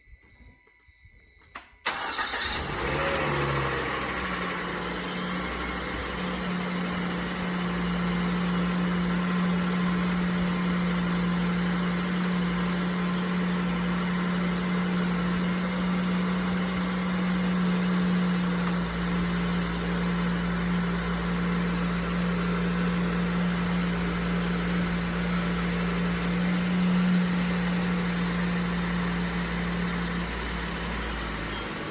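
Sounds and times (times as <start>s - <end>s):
car engine starting and idling: 1.5s - 31.9s
engine ticking: 1.9s - 3.0s.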